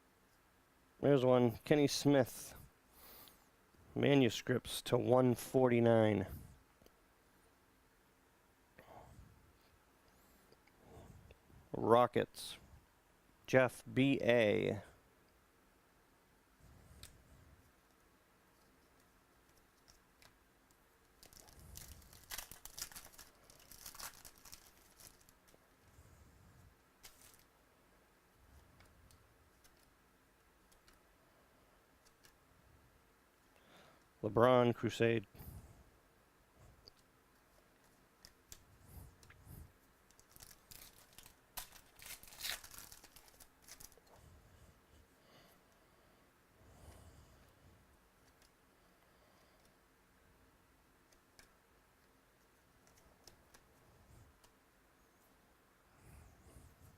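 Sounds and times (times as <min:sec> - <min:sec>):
foil wrapper crinkling and tearing: 0:21.2 - 0:25.6, 0:27.0 - 0:27.5, 0:40.1 - 0:44.1.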